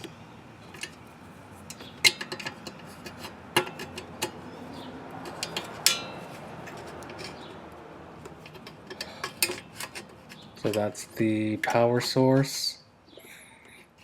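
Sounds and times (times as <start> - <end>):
sharp ringing metal clank: 5.8 - 6.2.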